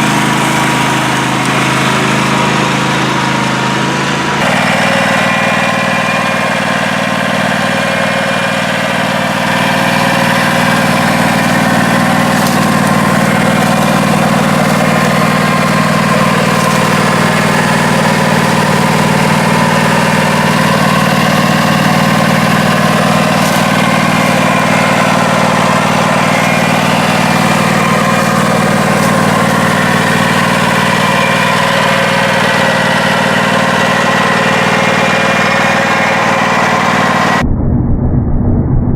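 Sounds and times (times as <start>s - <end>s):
lawn mower engine running: 0.0s - 37.4s.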